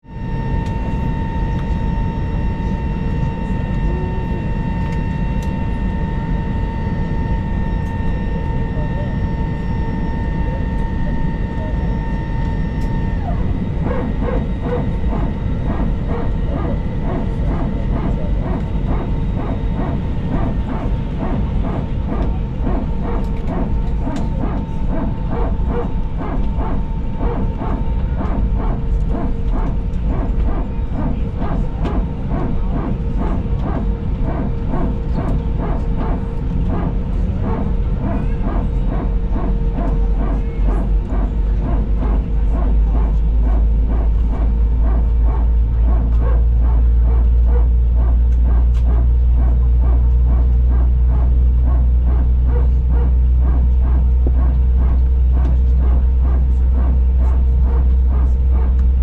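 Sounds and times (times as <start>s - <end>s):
aircraft cabin hum: 0.2s - 59.0s
hydraulic pump barking: 13.3s - 59.0s.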